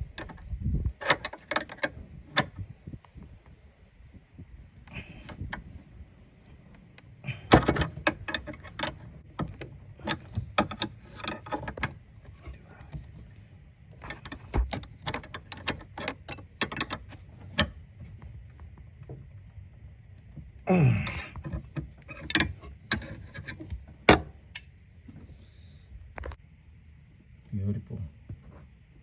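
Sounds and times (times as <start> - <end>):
hand tools and metal parts clanking: 1.0 - 2.6, 7.3 - 17.8, 20.8 - 24.8.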